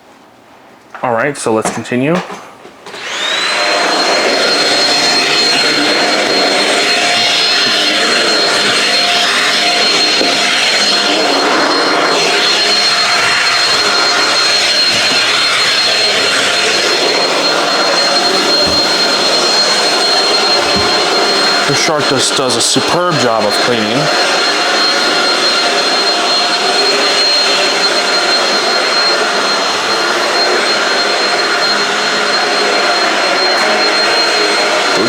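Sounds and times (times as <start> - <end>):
stick vacuum running: 2.8 - 35.0.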